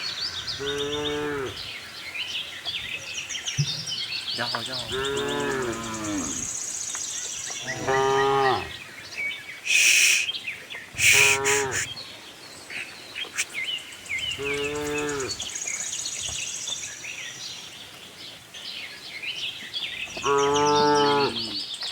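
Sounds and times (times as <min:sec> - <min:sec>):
cows mooing: 0:00.0 - 0:02.0, 0:04.4 - 0:06.6, 0:07.6 - 0:08.8, 0:11.0 - 0:11.9, 0:14.2 - 0:15.6, 0:20.2 - 0:21.6
birds chirping and trilling: 0:00.0 - 0:21.9
short breathy bursts: 0:09.7 - 0:10.3, 0:11.0 - 0:12.0, 0:13.3 - 0:13.8.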